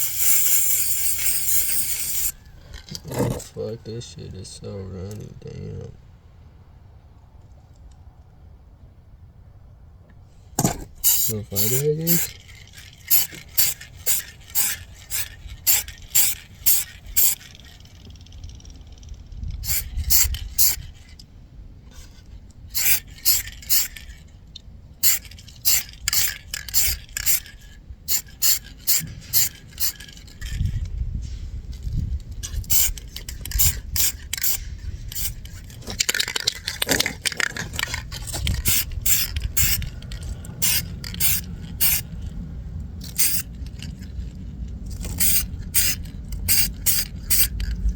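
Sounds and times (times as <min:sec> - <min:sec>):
spray hiss: 0:00.0 - 0:02.3
spray can shaken: 0:00.0 - 0:03.4, 0:10.9 - 0:18.8, 0:19.6 - 0:21.1, 0:22.7 - 0:24.2, 0:25.0 - 0:30.9, 0:31.7 - 0:42.3, 0:43.0 - 0:47.9.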